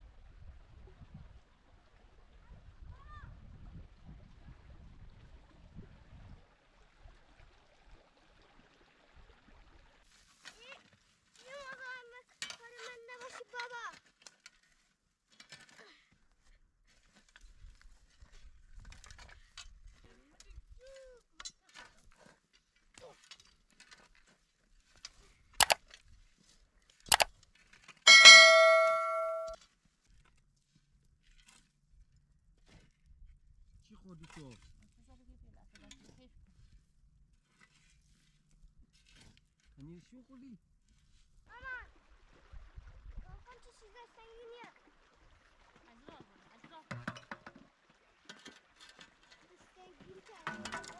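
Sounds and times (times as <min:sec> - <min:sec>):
metal object ringing: 0:28.1 - 0:29.6.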